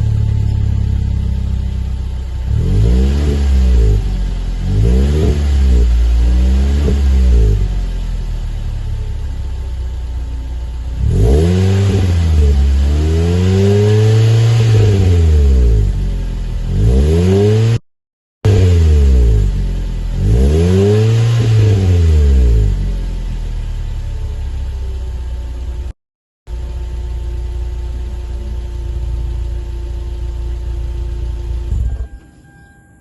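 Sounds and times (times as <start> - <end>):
car engine revving: 0.0 - 17.8, 18.4 - 25.9.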